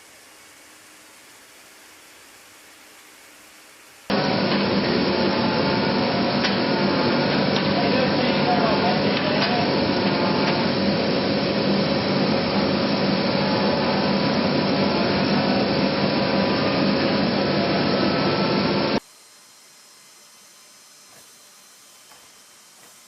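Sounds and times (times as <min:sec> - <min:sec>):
jet engine roar: 0:04.1 - 0:19.0.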